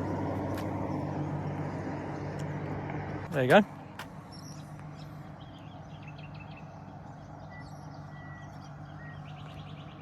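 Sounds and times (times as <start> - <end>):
faint bird chirps: 4.3 - 10.0.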